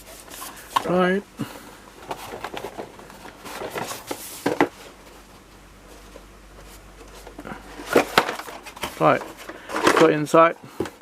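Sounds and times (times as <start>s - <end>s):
packaging rustling: 2.0s - 5.0s, 6.7s - 10.4s.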